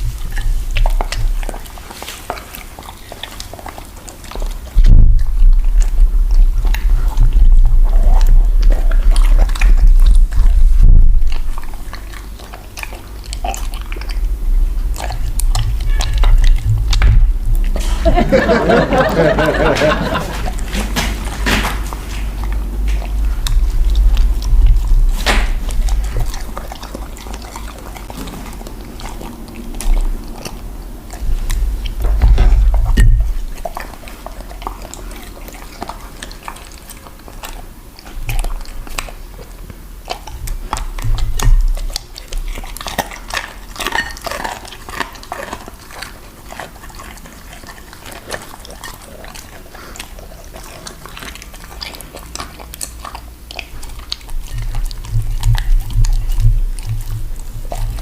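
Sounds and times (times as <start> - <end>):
dog crunching food: 0.0 - 58.0
low thumping rumbles: 4.4 - 33.8, 53.8 - 58.0.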